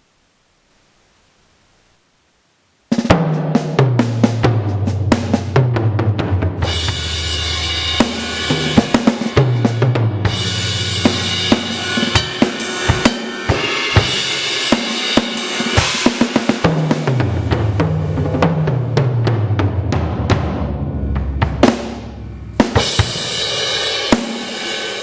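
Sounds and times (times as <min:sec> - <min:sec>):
descending tom fill: 0:02.9 - 0:25.0
drum kit playing: 0:02.9 - 0:25.0
cymbal crashes: 0:06.3 - 0:25.0.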